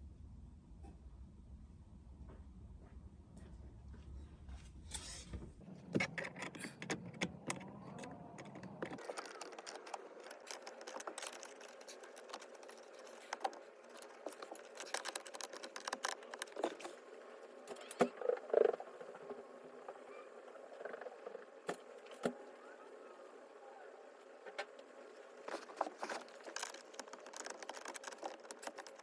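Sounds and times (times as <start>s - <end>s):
screwdriver clicking and scraping metal: 4.9s - 16.9s, 25.5s - 29.0s.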